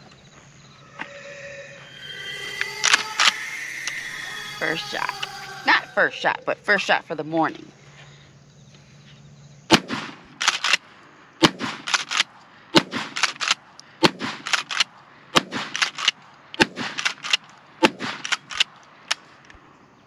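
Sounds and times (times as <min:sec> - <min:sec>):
shotgun shots: 0:09.7 - 0:10.8, 0:11.4 - 0:12.2, 0:12.8 - 0:14.8, 0:15.4 - 0:16.0, 0:16.6 - 0:18.5.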